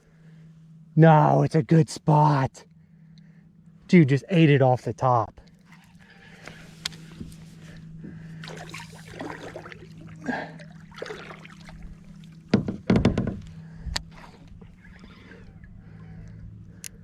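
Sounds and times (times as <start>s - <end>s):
water splashing: 8.3s - 12.5s
thumps against a kayak: 12.5s - 14.1s.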